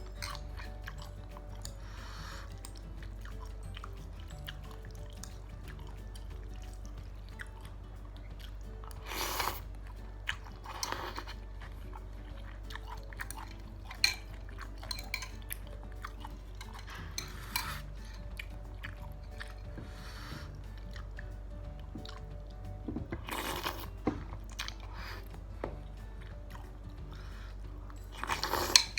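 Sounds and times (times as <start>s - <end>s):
cutlery clinking against bowl: 0.0s - 6.8s, 12.8s - 19.8s, 28.1s - 28.9s
noodles slurping: 0.0s - 22.3s, 23.1s - 25.6s, 26.2s - 28.9s
person chewing: 0.0s - 28.9s.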